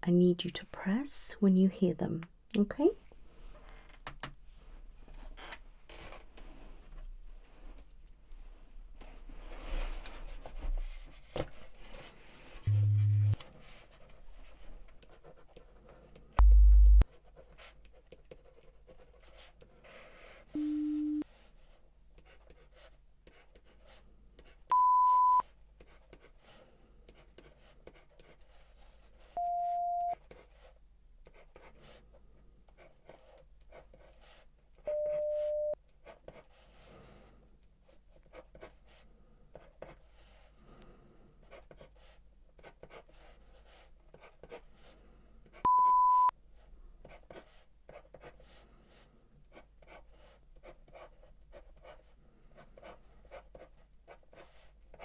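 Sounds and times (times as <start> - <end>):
hearing test beeps: 12.7 - 13.4, 16.4 - 17.0, 20.6 - 21.2, 24.7 - 25.4, 29.4 - 30.2, 34.9 - 35.8, 40.1 - 40.8, 45.7 - 46.3.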